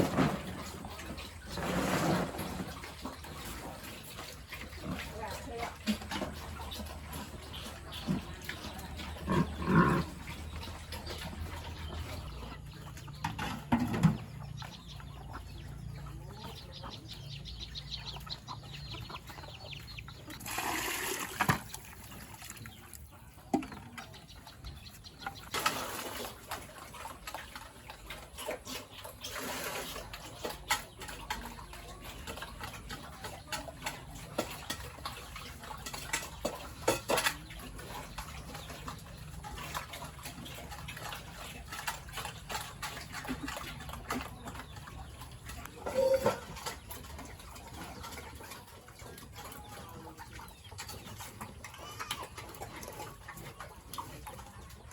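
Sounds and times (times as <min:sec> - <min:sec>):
chickens clucking: 0:00.0 - 0:54.9
gushing splashing water: 0:20.4 - 0:22.6
animal calls: 0:41.6 - 0:54.9.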